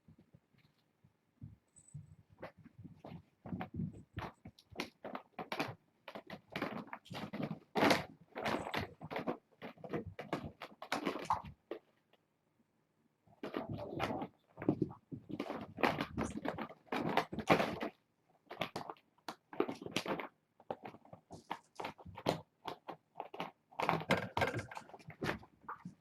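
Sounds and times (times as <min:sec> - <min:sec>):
kittens scuffling and rustling: 0:00.1 - 0:12.0, 0:13.4 - 0:26.0.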